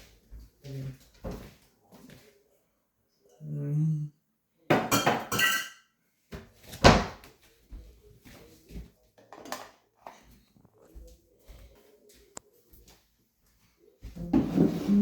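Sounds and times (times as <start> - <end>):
dishes and cutlery clinking: 4.7 - 5.9.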